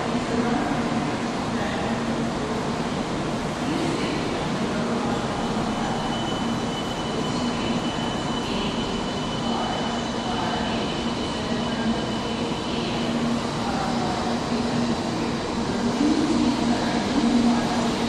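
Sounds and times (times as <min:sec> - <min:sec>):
train rail noise: 0:00.0 - 0:18.0
faint high whine: 0:04.8 - 0:18.0.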